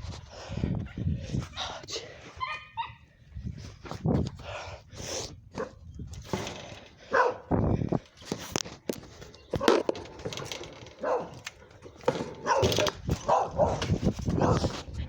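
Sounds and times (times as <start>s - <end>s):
dogs barking and yipping: 2.3s - 3.2s, 7.0s - 7.5s, 9.4s - 14.8s.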